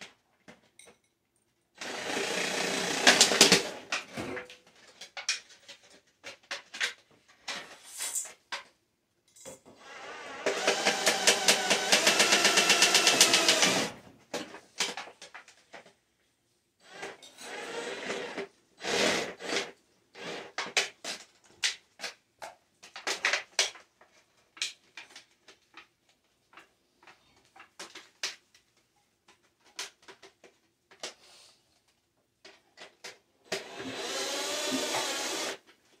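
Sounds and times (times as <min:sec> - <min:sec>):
power drill running: 0:01.8 - 0:03.8, 0:09.8 - 0:14.0, 0:16.9 - 0:19.6, 0:33.5 - 0:35.6.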